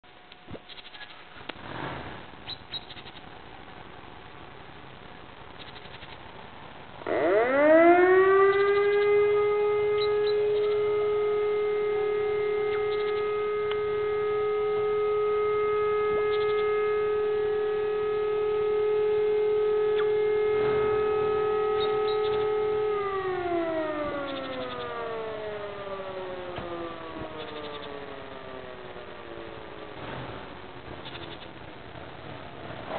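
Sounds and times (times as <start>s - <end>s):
distant motor-driven siren: 7.0s - 32.9s
electronic siren steady tone: 7.0s - 32.9s.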